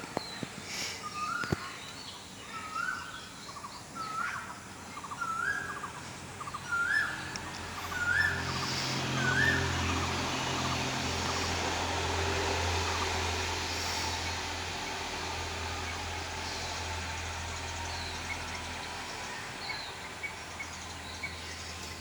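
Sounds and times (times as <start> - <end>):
oriole whistled calls: 6.6 - 7.3, 7.9 - 8.5.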